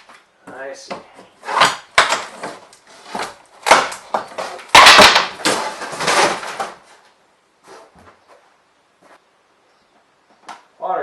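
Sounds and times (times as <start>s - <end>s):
wood cracking and crunching: 1.5s - 7.0s.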